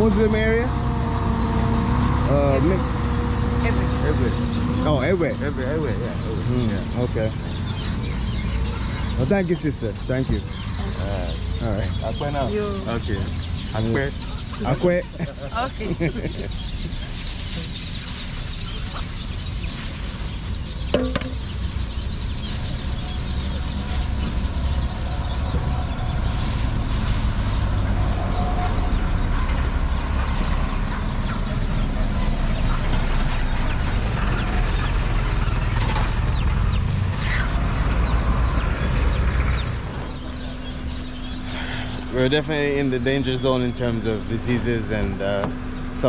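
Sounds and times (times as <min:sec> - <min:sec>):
chickens clucking: 0:00.0 - 0:46.0
low rumble: 0:31.1 - 0:43.1.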